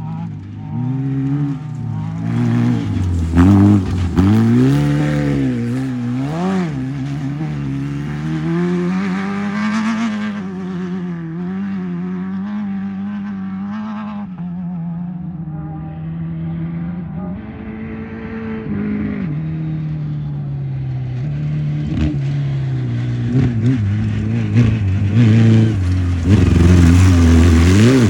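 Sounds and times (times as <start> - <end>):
engine revving hard: 1.0 - 13.7, 23.3 - 28.0.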